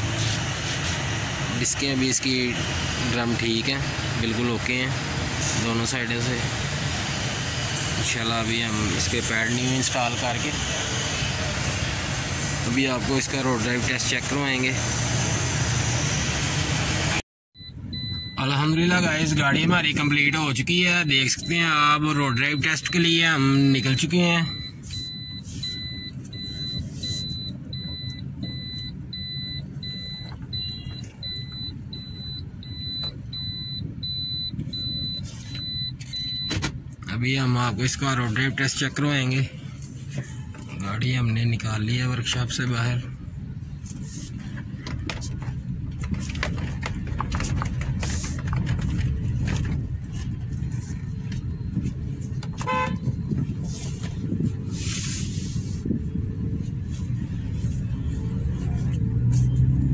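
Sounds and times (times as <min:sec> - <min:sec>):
engine humming: 0:00.0 - 0:59.9
car warning buzzer beeping: 0:17.6 - 0:19.8, 0:20.7 - 0:36.7, 0:50.8 - 0:53.4.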